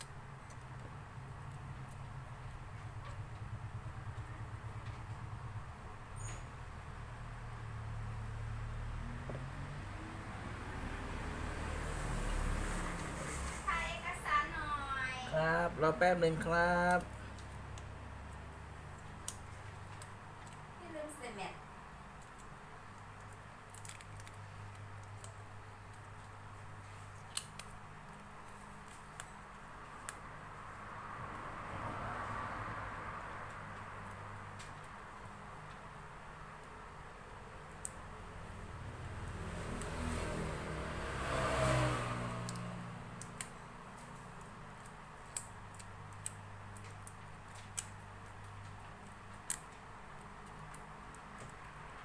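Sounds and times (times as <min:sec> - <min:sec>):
vehicle passing rumble: 0:01.0 - 0:19.0, 0:30.3 - 0:46.1
small sharp clicks and taps: 0:16.9 - 0:20.7, 0:22.2 - 0:30.3, 0:42.4 - 0:52.0.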